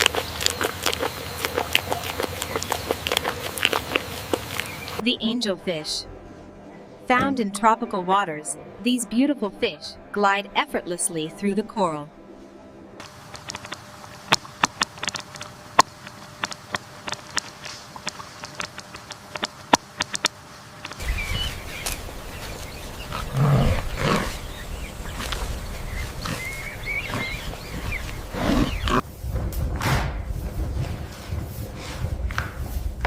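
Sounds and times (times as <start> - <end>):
sharp irregular clicks: 13.0 - 21.0
deep animal growls: 21.0 - 29.0.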